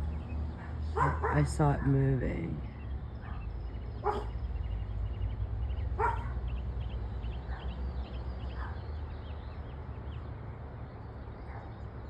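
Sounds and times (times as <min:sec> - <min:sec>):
dog barking: 0:00.6 - 0:01.9, 0:03.2 - 0:04.4, 0:06.0 - 0:06.4.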